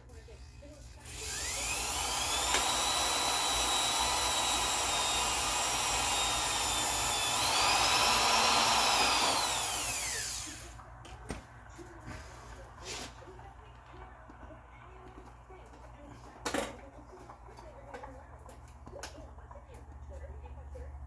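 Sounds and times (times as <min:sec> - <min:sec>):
electric drill whining: 0:01.0 - 0:10.8.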